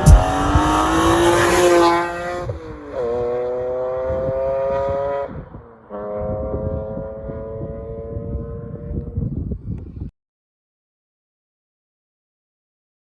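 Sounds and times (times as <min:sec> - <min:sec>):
car engine accelerating: 0:00.0 - 0:06.2.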